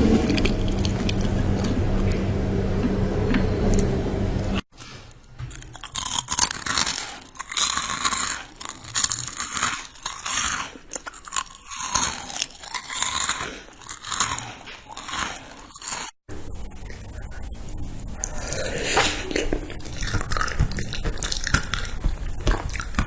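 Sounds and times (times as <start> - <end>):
crunchy chewing and biting: 5.5 - 16.2, 18.2 - 23.0.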